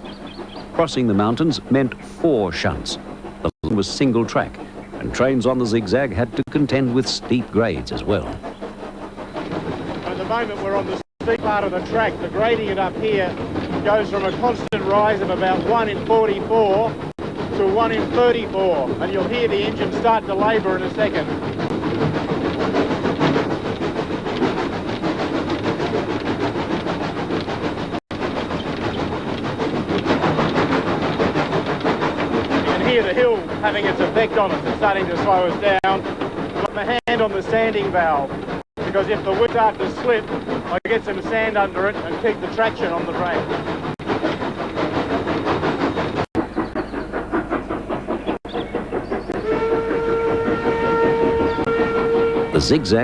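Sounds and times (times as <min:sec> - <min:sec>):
steam locomotive exhaust chuffs: 0:00.0 - 0:53.0
steam whistle: 0:49.4 - 0:53.0.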